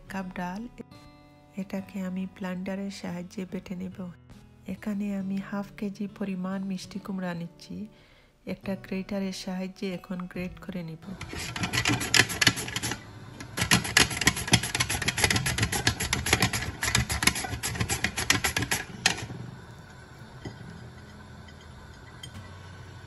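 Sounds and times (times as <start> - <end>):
pumpkin grating on hand grater: 11.2 - 19.4.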